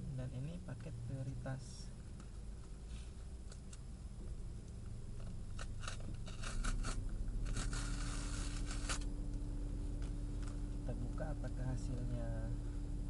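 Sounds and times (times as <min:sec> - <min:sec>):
low hum: 0:00.0 - 0:13.0
packaging tearing: 0:05.6 - 0:09.1.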